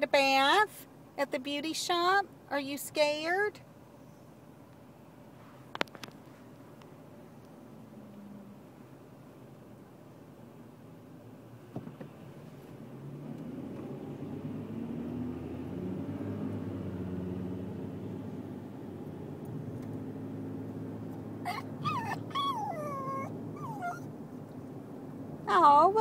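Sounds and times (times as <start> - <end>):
car cabin rumble: 19.0 - 26.0
dog whining: 21.4 - 24.1.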